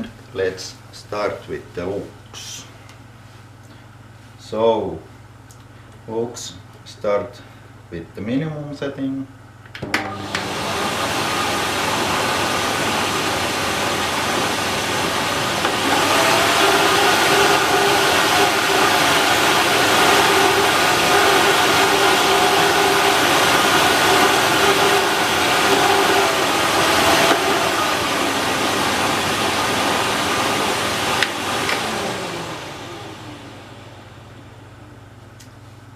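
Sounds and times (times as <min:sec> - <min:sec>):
vacuum cleaner motor whine: 0:09.8 - 0:35.0.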